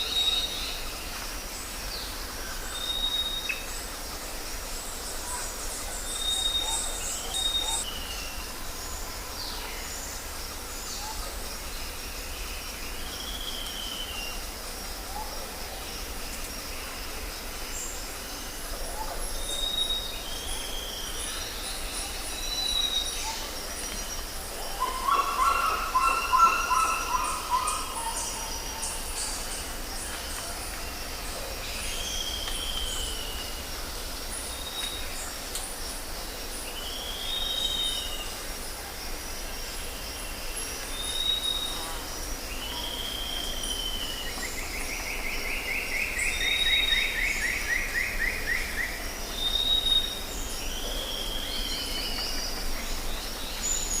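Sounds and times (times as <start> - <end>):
insects chorus: 0.0 - 54.0.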